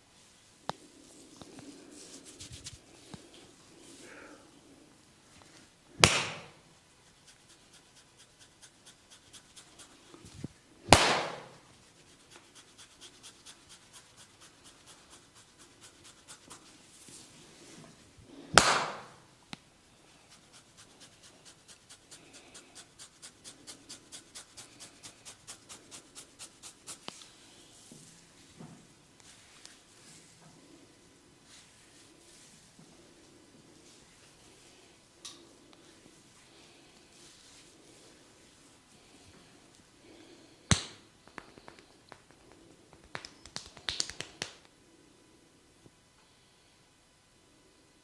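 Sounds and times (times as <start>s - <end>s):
loud sharp hair cracks: 6.0s - 6.5s, 10.9s - 11.6s, 18.6s - 19.2s.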